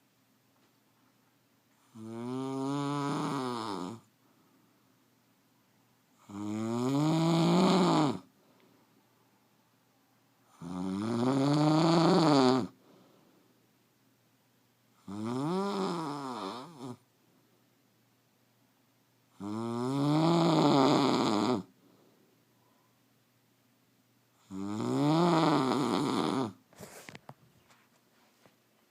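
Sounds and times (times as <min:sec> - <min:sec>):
woman snoring: 0:01.8 - 0:04.1, 0:06.2 - 0:08.3, 0:10.5 - 0:12.8, 0:15.0 - 0:17.0, 0:19.4 - 0:21.7, 0:24.4 - 0:26.6.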